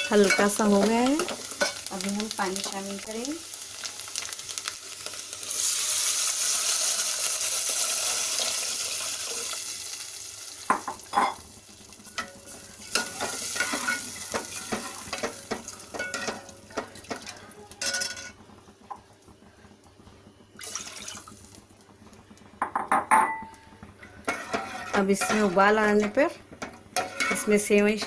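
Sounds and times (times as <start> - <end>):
hot ghee sizzling hiss: 0.0 - 20.0, 20.6 - 22.6, 23.7 - 28.0.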